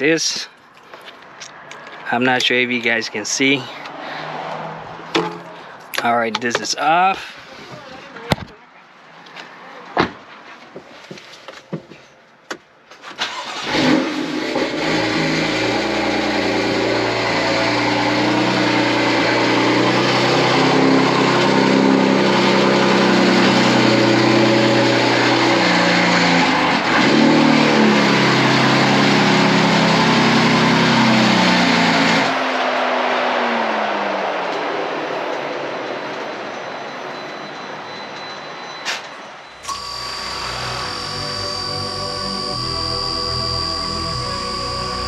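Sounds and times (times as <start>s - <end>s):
car engine starting and running: 13.2s - 32.3s, 39.6s - 45.0s.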